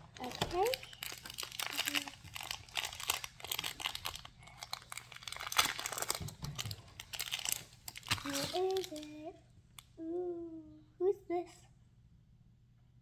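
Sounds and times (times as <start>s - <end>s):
plastic packaging crackling and tearing: 0.0s - 9.3s.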